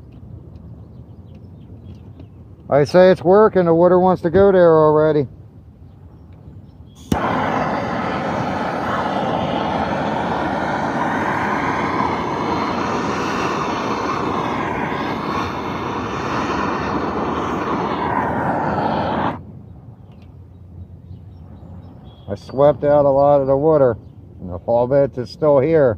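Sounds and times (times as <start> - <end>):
handheld blower running: 7.1 - 19.4.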